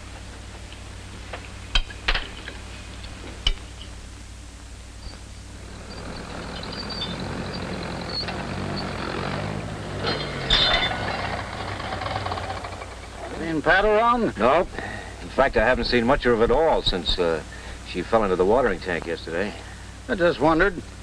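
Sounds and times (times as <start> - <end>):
tractor engine running: 5.5 - 14.7.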